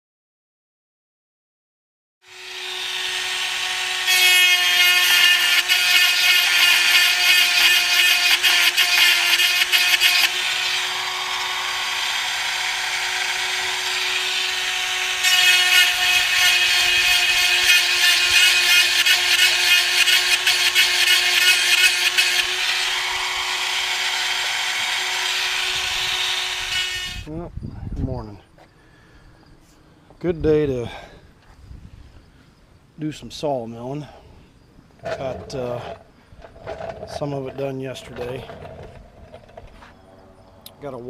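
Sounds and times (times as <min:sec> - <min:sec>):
chainsaw running at high revs: 0:02.2 - 0:04.5, 0:05.1 - 0:27.3.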